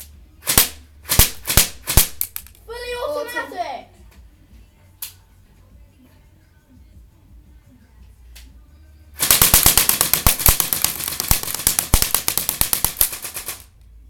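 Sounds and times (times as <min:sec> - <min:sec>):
airsoft gun full-auto burst: 0:00.4 - 0:02.4, 0:09.2 - 0:13.7.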